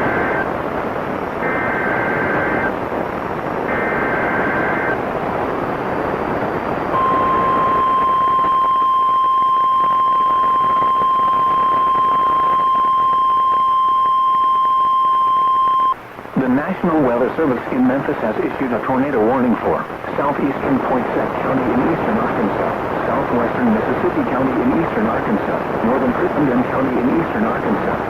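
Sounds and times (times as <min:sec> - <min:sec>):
radio static: 0:00.0 - 0:28.0
steady warning alarm tone: 0:07.0 - 0:16.0
warbling data tones: 0:07.0 - 0:16.0.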